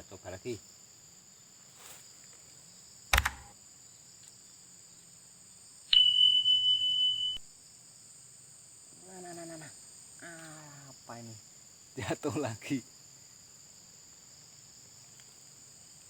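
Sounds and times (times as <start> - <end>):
high insect drone: 0.0 - 16.0
sharp knock: 3.2 - 3.5
high-pitched beep: 5.9 - 7.4.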